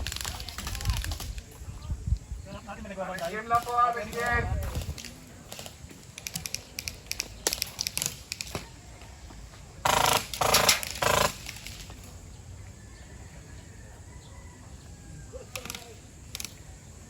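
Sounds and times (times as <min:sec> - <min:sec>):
sharp clicks and crackles: 0:00.0 - 0:01.6, 0:03.1 - 0:08.8, 0:15.5 - 0:16.7
airsoft gun fire bursts: 0:09.8 - 0:12.0.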